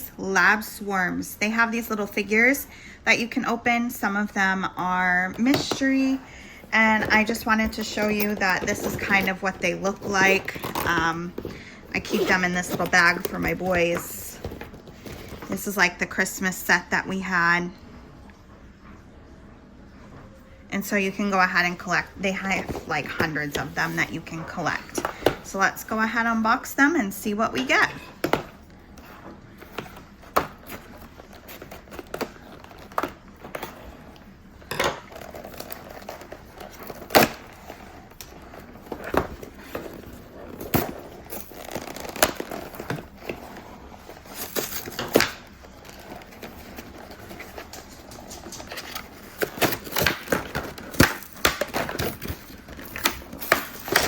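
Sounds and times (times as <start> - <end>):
packaging crinkling and tearing: 7.1 - 13.5, 35.0 - 54.0.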